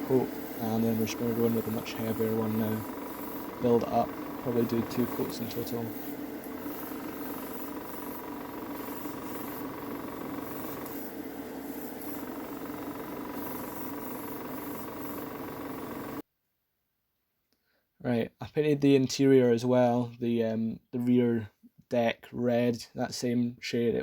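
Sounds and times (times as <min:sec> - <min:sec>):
airbrush spray hiss: 0:00.0 - 0:16.2
small electric motor humming: 0:00.0 - 0:16.2.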